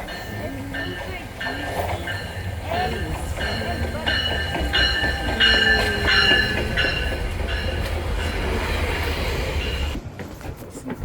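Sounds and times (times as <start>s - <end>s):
train low rumble: 0.0s - 11.0s.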